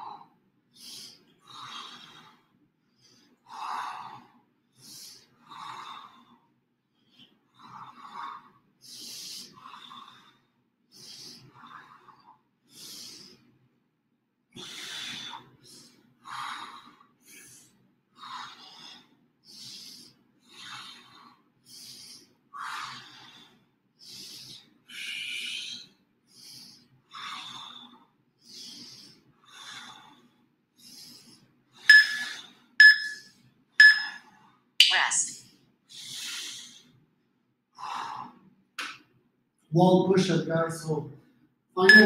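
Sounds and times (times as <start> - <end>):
person breathing hard: 0.0 - 13.5, 14.6 - 32.6, 35.9 - 37.0, 37.7 - 38.5
short steady tones: 31.9 - 34.2.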